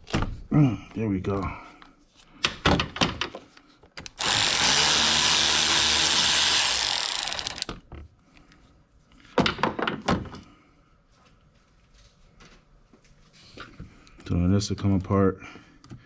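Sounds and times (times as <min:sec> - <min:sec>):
power tool motor whirring: 0:04.1 - 0:07.8.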